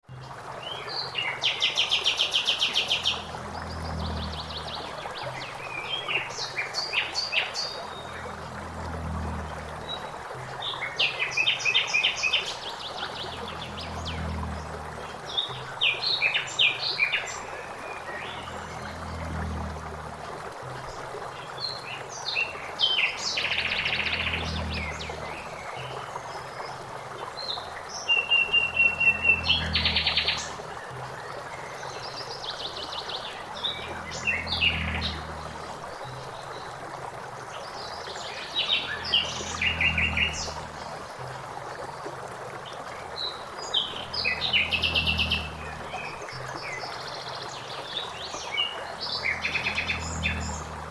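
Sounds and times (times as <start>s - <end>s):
flowing water: 0.0s - 50.9s
low rumble: 2.2s - 32.4s, 33.0s - 37.3s, 43.7s - 47.1s, 48.8s - 50.9s.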